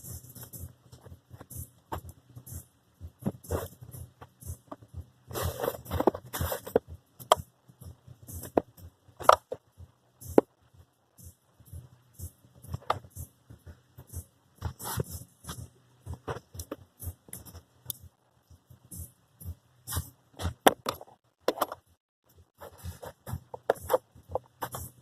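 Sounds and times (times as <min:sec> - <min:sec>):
rustling and scraping: 0:03.2 - 0:07.4, 0:14.6 - 0:17.8, 0:19.9 - 0:25.0.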